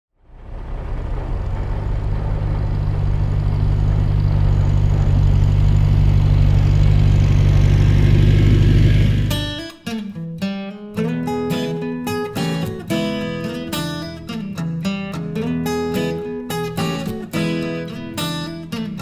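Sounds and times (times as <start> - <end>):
tractor and combine engine droning: 0.1 - 9.5.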